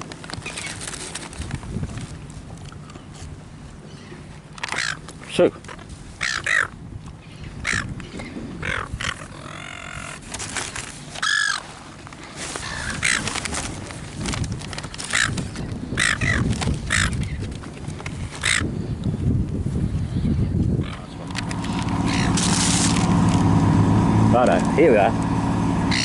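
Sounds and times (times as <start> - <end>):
gulls squawking: 6.2 - 6.7, 11.2 - 11.6, 16.0 - 17.2, 20.8 - 26.0.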